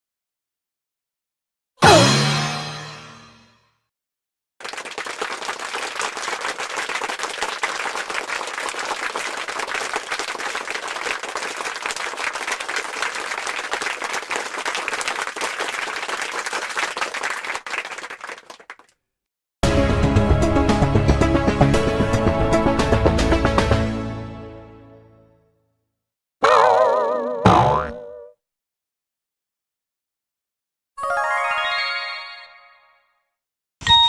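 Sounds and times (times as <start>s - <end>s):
crowd applause: 4.6s - 18.9s.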